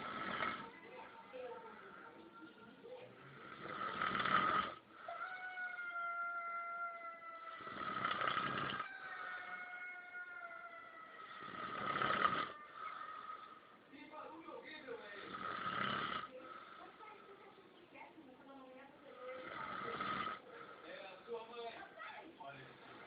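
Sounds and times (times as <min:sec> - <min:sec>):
boy snoring heavily: 0:00.0 - 0:00.7, 0:03.4 - 0:04.8, 0:07.5 - 0:08.9, 0:11.2 - 0:13.6, 0:15.2 - 0:16.8, 0:19.3 - 0:20.4.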